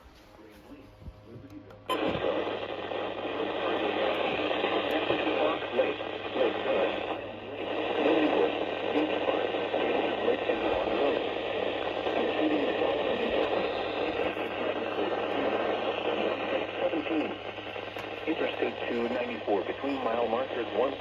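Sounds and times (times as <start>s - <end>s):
radio static hiss: 0.0s - 21.0s
steady low hum: 0.0s - 21.0s
faint automated voice: 18.3s - 21.0s.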